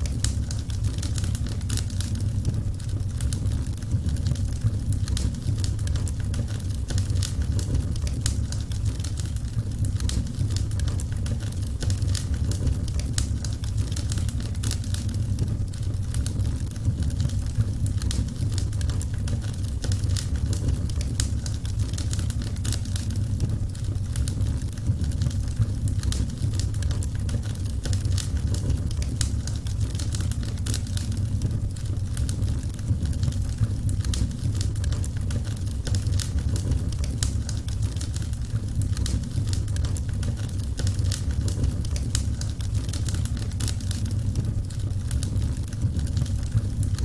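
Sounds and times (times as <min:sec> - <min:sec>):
wood fire crackling and popping: 0:00.0 - 0:47.0.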